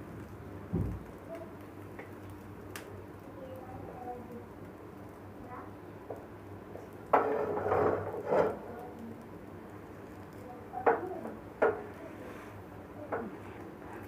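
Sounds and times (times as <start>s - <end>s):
utensil scraping a frying pan: 7.1s - 8.7s.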